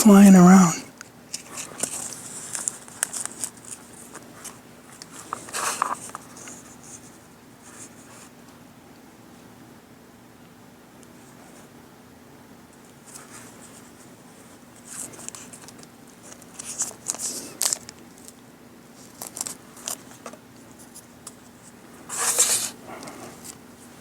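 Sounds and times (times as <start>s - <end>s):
cellophane crinkling: 1.4s - 6.6s, 14.9s - 18.4s, 19.0s - 20.4s.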